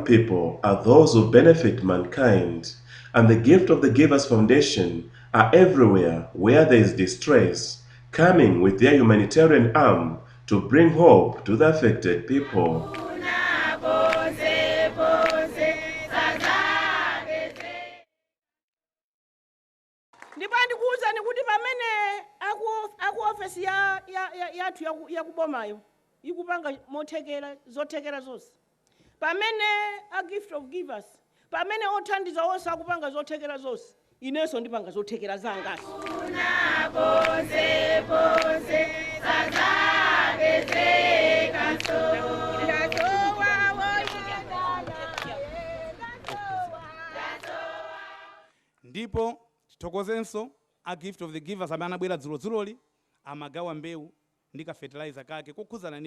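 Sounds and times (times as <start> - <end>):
choir singing: 12.3 - 18.1, 35.6 - 48.5.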